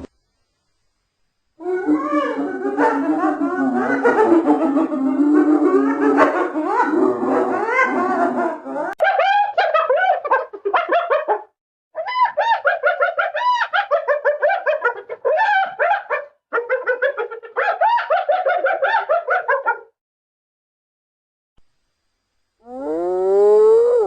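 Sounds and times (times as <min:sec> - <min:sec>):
hyena laughing: 0:01.8 - 0:11.3, 0:12.0 - 0:16.1.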